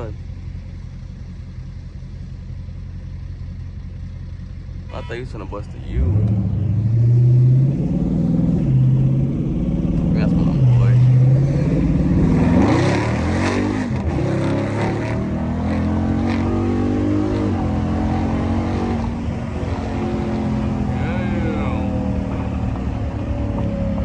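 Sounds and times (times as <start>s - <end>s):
car engine accelerating through gears: 5.8s - 24.0s.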